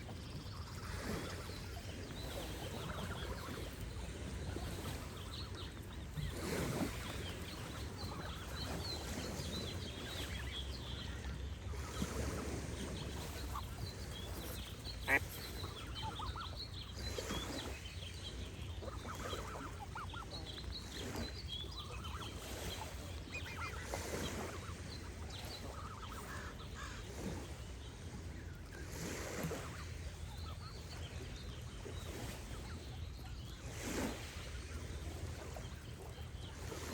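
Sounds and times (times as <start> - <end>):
low wash of water: 0.0 - 36.9
small birds chirping: 0.0 - 36.9
geese honking: 13.2 - 16.6.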